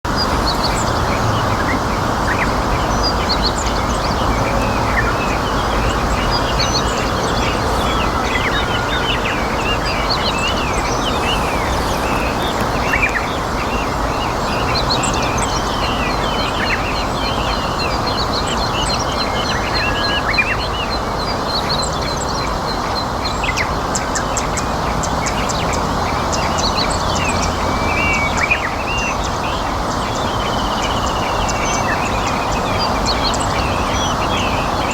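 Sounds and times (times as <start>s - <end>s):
river water rushing: 0.1s - 34.9s
small birds chirping: 0.1s - 34.9s.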